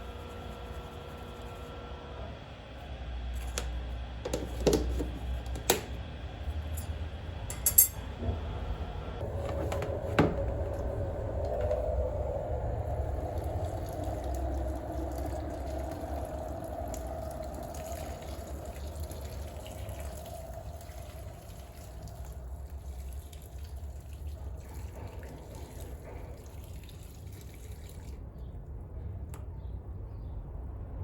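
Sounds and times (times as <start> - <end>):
water running: 10.0 - 28.2.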